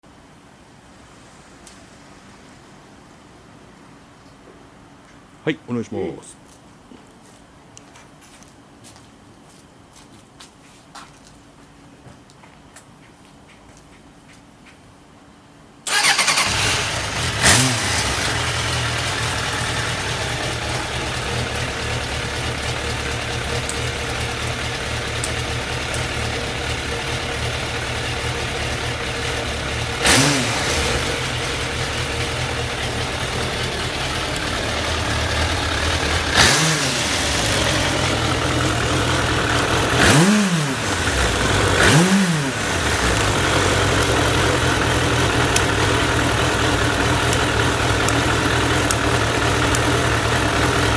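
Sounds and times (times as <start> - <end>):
motorcycle engine idling and revving: 15.9 - 50.9
motorcycle engine starting: 15.9 - 50.9.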